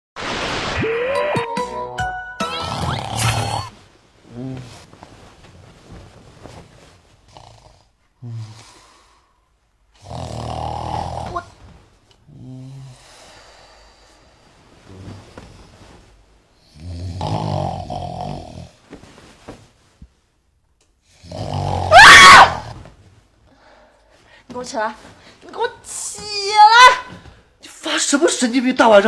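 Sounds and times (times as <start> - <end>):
man snoring: 2.6 - 3.7, 10.0 - 11.4, 16.6 - 18.7, 21.1 - 21.9
loud shout: 21.9 - 22.7.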